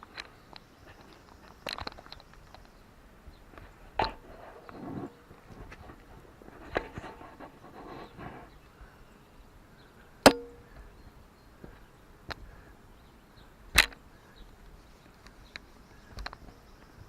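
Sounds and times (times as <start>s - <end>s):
loud metal strikes: 10.3s - 10.7s.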